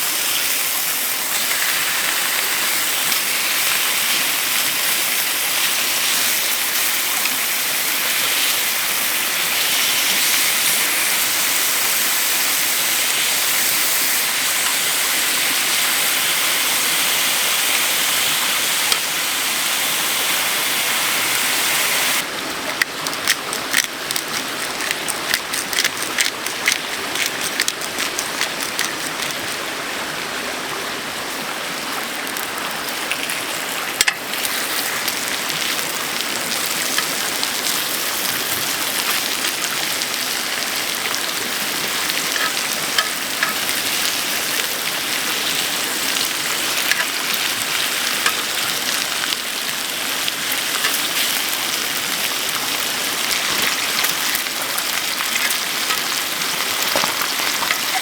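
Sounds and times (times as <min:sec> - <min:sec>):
food sizzling in a hot pan: 0:00.0 - 0:22.3, 0:34.1 - 0:58.0.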